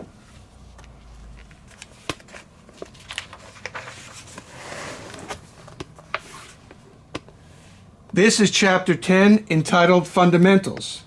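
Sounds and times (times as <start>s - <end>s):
book pages rustling: 0.1s - 7.7s.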